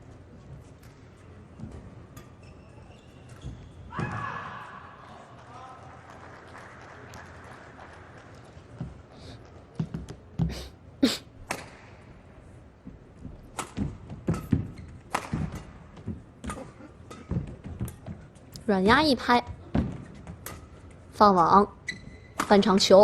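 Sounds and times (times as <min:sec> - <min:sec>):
racket striking shuttlecock: 0:13.5 - 0:15.8.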